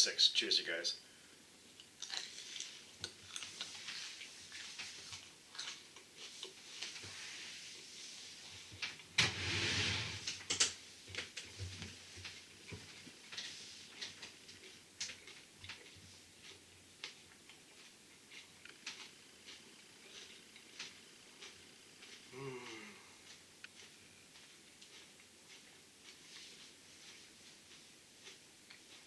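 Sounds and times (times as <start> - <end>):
crunchy pepper chewing: 1.7 - 8.8, 12.2 - 29.0.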